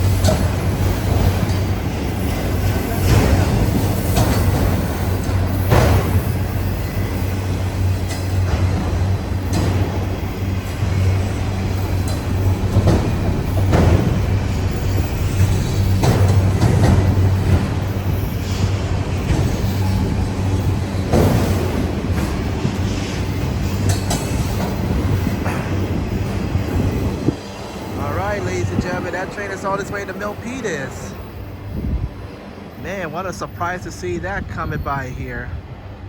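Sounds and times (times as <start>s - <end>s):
train cars knocking and clanking: 0.0s - 36.0s
train wheels rumbling on rail: 0.0s - 36.0s.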